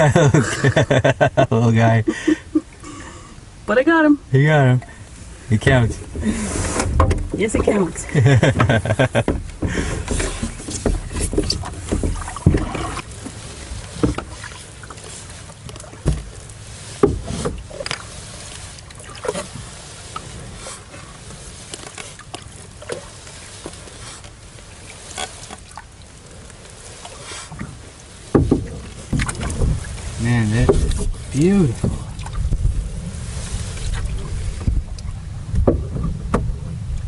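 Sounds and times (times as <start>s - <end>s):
water: 0.0s - 37.0s
wind: 0.0s - 37.0s
knocks in a canoe: 5.6s - 14.6s, 15.6s - 18.1s, 27.2s - 32.9s, 33.7s - 37.0s
paddle touching canoe hull: 5.6s - 37.0s.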